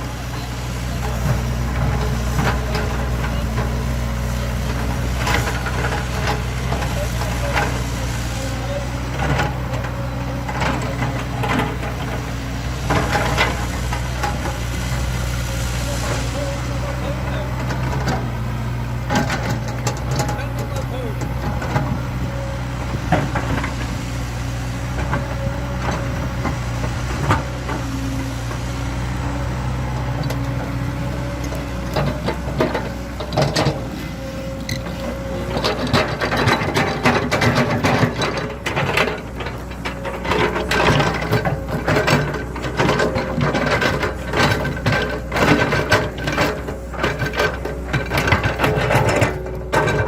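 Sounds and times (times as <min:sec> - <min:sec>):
excavator diesel engine running: 0:00.0 - 0:50.0
machine knocks and clanks: 0:09.1 - 0:15.3, 0:15.9 - 0:24.0, 0:24.8 - 0:50.0.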